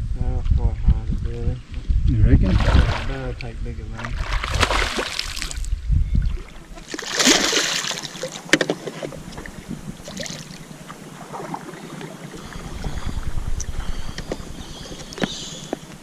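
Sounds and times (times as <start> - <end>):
water splashing around a canoe: 2.4 - 5.7, 6.3 - 13.3.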